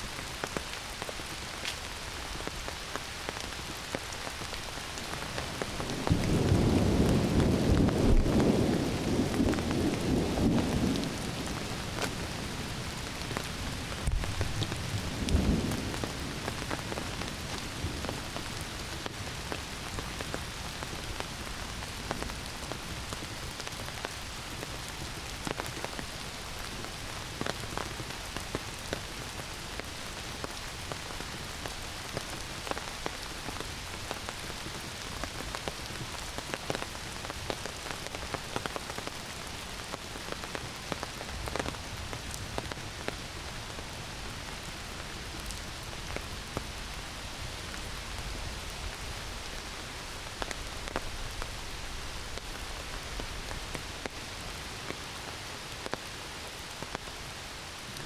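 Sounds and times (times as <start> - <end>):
heavy rain through trees: 0.0 - 58.0
thunder rumbling: 5.1 - 19.2.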